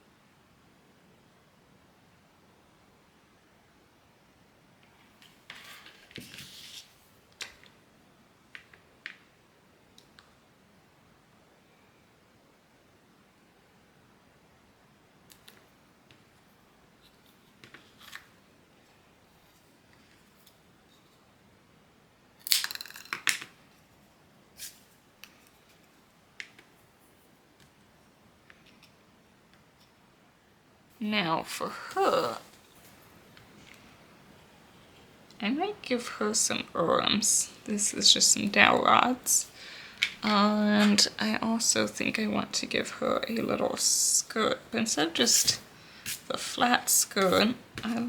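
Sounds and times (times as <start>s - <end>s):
rustling of craft materials: 4.8s - 7.8s, 15.3s - 21.5s, 22.5s - 30.1s, 31.2s - 48.0s.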